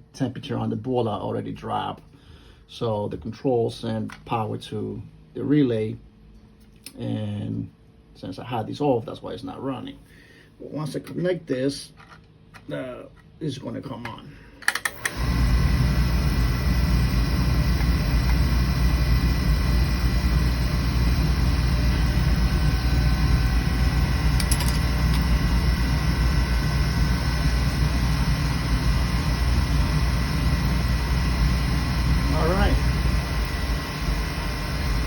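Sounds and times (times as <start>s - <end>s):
faint steady hum: 0.0s - 35.0s
oil burner low rumble: 14.9s - 35.0s.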